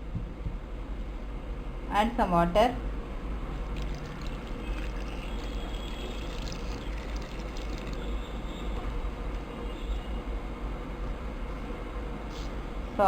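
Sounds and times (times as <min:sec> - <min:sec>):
water pouring into pot: 0:03.7 - 0:08.2.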